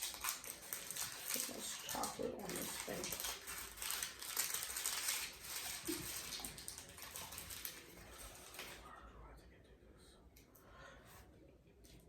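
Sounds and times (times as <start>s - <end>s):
plastic packaging crackling: 0.0s - 8.8s.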